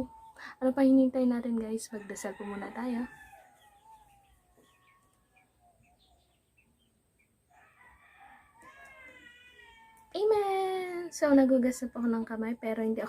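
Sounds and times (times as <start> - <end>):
distant bird chirps: 0.0 - 13.0
rooster crowing: 1.9 - 5.4, 7.5 - 10.3.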